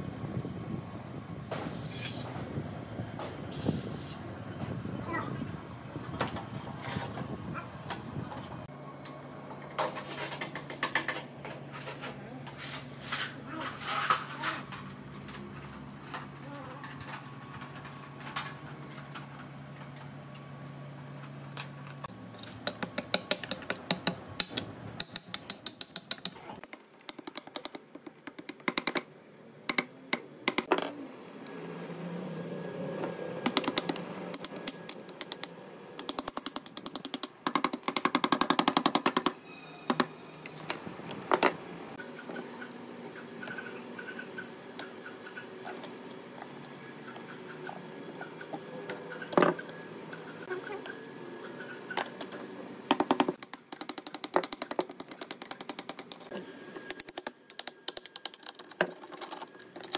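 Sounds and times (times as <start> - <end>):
hand tools and metal parts clattering: 9.4 - 20.5, 33.5 - 42.5, 51.9 - 59.9.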